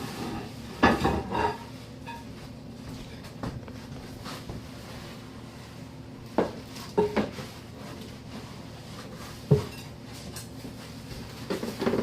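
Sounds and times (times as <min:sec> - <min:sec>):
steady low hum: 0:00.0 - 0:12.0
kitchenware clinking and knocking: 0:00.8 - 0:02.3.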